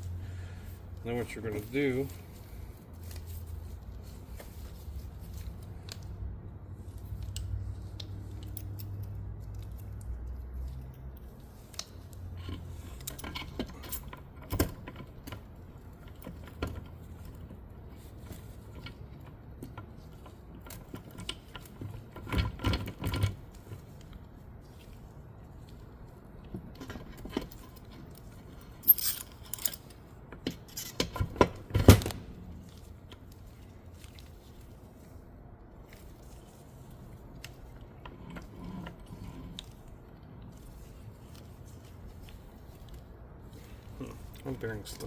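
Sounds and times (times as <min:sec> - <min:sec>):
metal gears clinking: 0:26.8 - 0:31.4.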